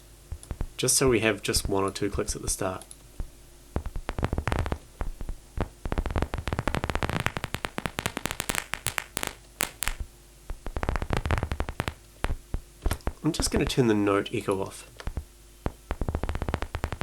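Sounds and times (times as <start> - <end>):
synthesized paper crumpling: 3.8 - 10.0, 10.7 - 13.9, 15.0 - 17.0.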